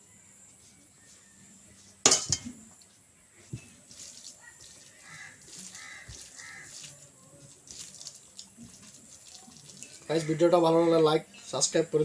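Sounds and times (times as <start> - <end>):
dish clattering: 2.1 - 2.6.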